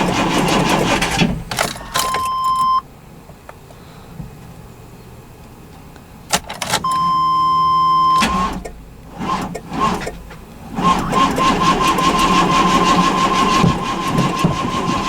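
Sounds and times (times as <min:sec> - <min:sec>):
starter cranking engine: 0:00.0 - 0:02.8, 0:06.3 - 0:07.2, 0:08.1 - 0:15.0
clicks: 0:01.0 - 0:02.8, 0:05.4 - 0:07.2
steady high tone: 0:10.9 - 0:15.0.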